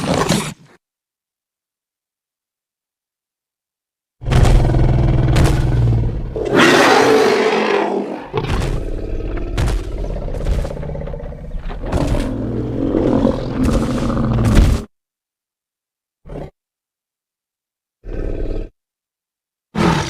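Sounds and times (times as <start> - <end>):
dinosaur growls: 4.2 - 14.9, 18.0 - 18.7
loud breathy roar: 4.6 - 14.6, 19.8 - 20.0.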